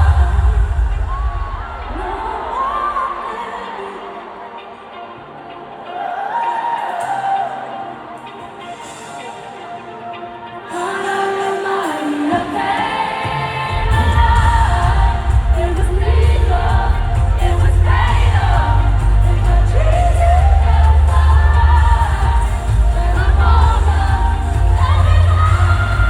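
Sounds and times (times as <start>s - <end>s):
lead vocal singing: 0.0s - 26.0s
live pop concert music: 0.0s - 26.0s
heavy bass beat: 13.8s - 26.0s.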